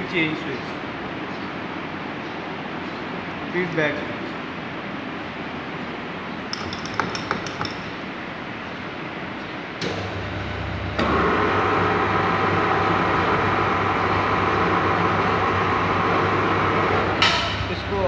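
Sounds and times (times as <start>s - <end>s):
knock: 6.6s - 7.9s
metallic clinks: 6.6s - 8.0s
lathe running with whine: 10.3s - 17.2s.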